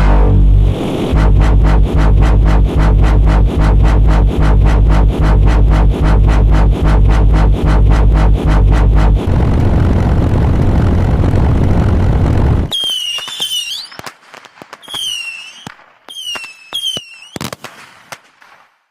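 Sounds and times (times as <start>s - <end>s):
fireworks rumbling blasts: 0.0s - 15.8s
firework whistles: 12.7s - 17.5s
firework pops: 12.8s - 18.6s.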